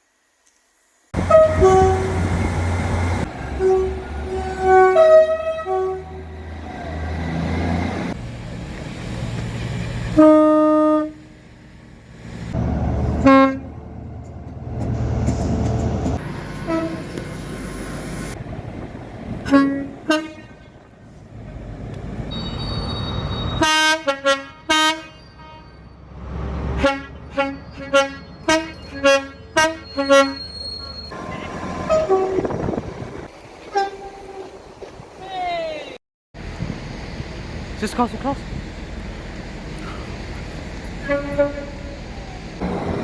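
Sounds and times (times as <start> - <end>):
low rumble of passing trains: 0.2 - 43.0
train horn toots: 1.2 - 2.8, 3.4 - 7.0, 10.1 - 11.4, 13.1 - 13.8, 16.6 - 17.2, 19.4 - 20.7, 22.3 - 26.1, 26.8 - 34.6, 41.0 - 43.0.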